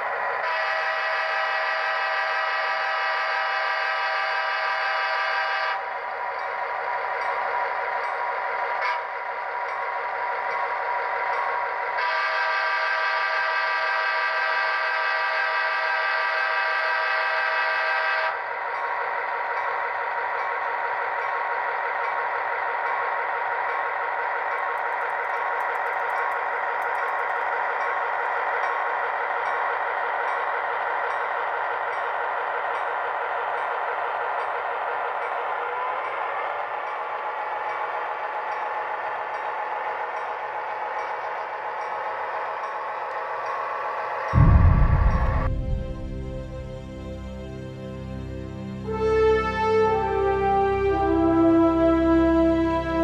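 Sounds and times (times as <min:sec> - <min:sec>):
rhythmic diesel engine sound: 0:00.0 - 0:53.0
diesel locomotive horn: 0:00.1 - 0:06.0, 0:11.8 - 0:18.5, 0:44.4 - 0:53.0.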